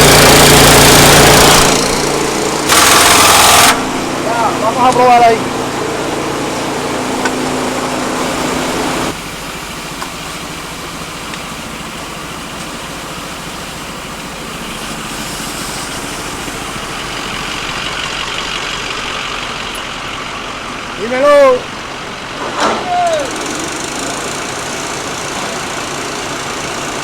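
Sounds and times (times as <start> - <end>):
steady hum: 0.0 - 12.2
hydraulic hiss: 0.0 - 27.0
truck engine running: 0.0 - 27.0.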